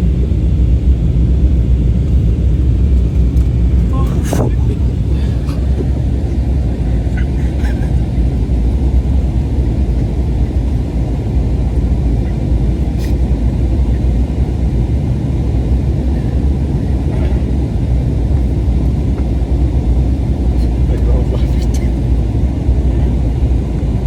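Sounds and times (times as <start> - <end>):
jet engines rumbling in cabin: 0.0 - 24.0.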